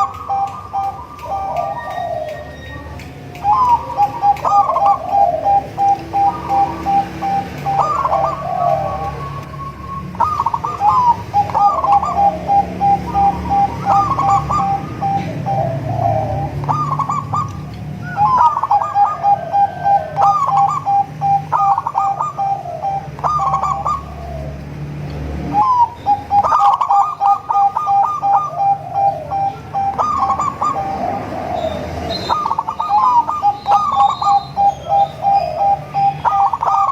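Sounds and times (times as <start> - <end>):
doves cooing: 0.0 - 36.9.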